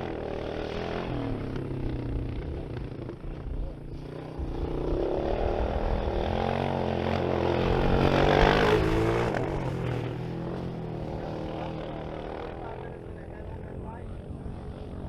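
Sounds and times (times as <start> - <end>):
off-road vehicle engine revving: 4.3 - 12.7.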